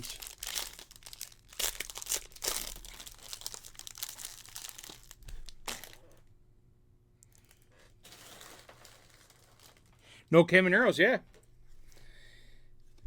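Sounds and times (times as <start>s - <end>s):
foil wrapper crinkling and tearing: 0.0s - 6.2s, 7.2s - 10.1s.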